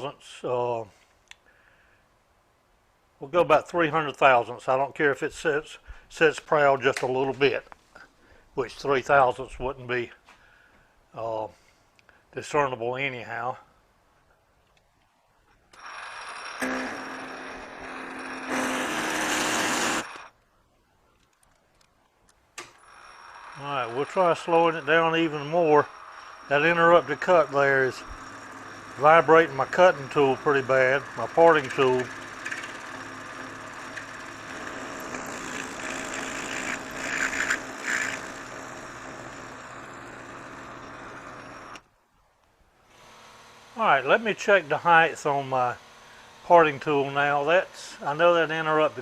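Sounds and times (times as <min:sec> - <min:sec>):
lathe parting tool chattering: 0:15.8 - 0:20.2, 0:22.8 - 0:41.8.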